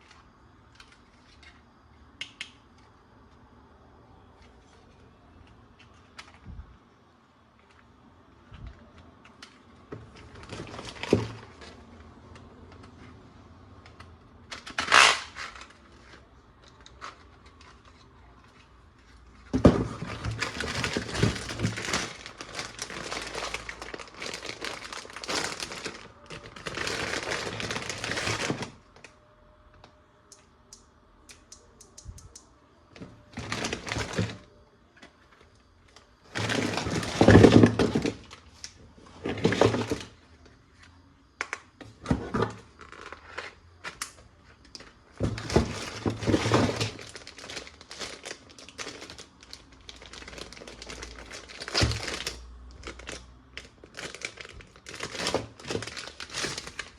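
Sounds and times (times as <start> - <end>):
packaging rustling and crinkling: 8.5 - 12.0, 14.4 - 29.1, 33.0 - 40.5, 42.0 - 56.9.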